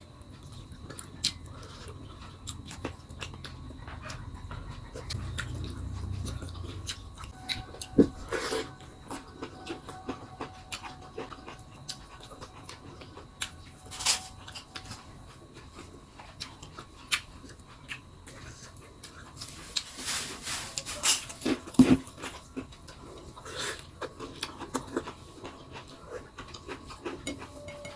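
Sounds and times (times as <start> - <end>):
wet chewing and crunching: 0.2 - 20.0, 21.2 - 27.9.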